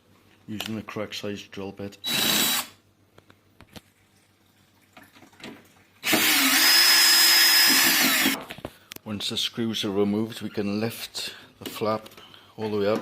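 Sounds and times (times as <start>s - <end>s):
cordless drill backing out screws: 6.1s - 8.4s.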